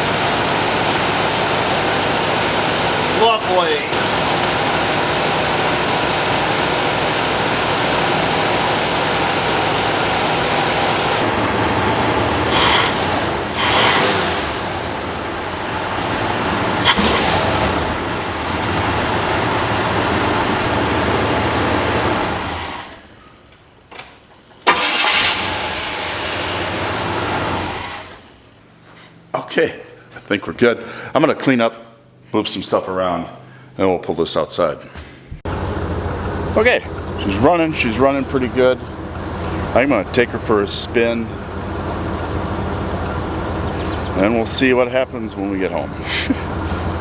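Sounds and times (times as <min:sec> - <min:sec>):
car engine running: 0:00.0 - 0:23.3, 0:24.7 - 0:29.0, 0:35.4 - 0:47.0.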